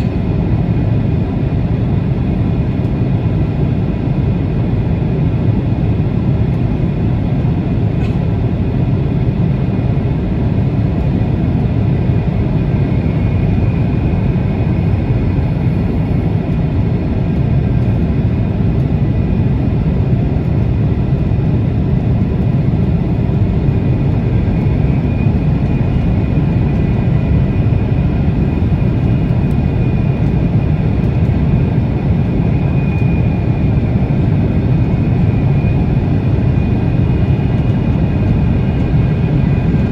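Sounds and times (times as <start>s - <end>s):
low rumble of engines and airflow: 0.0s - 39.9s.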